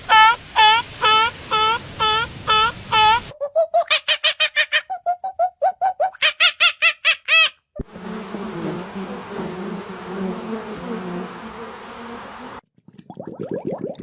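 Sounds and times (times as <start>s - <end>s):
rapid animal calls: 0.0s - 7.5s
insect buzzing hum: 7.8s - 12.6s
hissy background: 7.9s - 12.6s.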